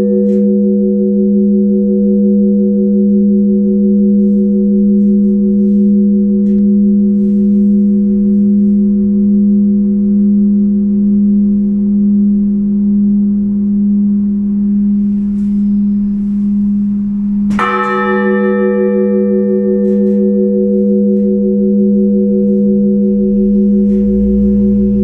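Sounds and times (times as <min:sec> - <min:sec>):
bell struck with bright clang: 0:00.0 - 0:01.0, 0:17.4 - 0:21.8
deep church bell humming: 0:00.0 - 0:25.0.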